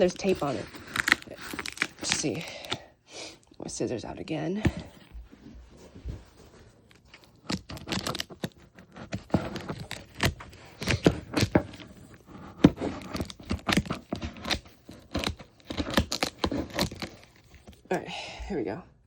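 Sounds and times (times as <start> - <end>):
scissors cutting packing tape: 0.2 - 2.8, 7.1 - 17.8
foam and cardboard rustling: 4.7 - 17.8.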